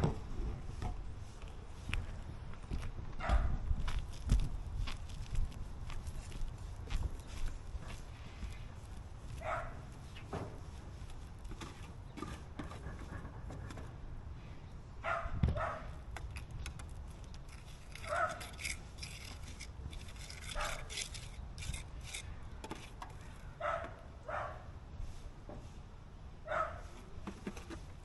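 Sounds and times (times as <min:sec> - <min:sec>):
dog barking: 0:03.2 - 0:03.5, 0:09.4 - 0:09.8, 0:15.0 - 0:15.9, 0:18.0 - 0:18.4, 0:23.6 - 0:24.7, 0:26.5 - 0:26.9.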